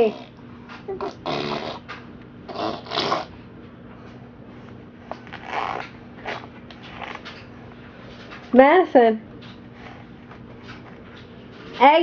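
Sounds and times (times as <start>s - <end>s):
baby vocalizing: 0.9s - 1.9s, 2.5s - 3.3s.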